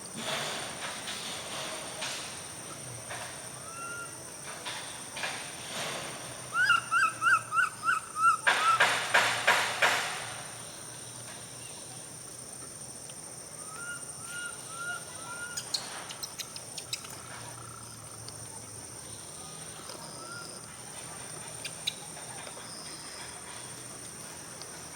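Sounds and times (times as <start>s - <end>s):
animal chirping calls: 6.5s - 8.9s.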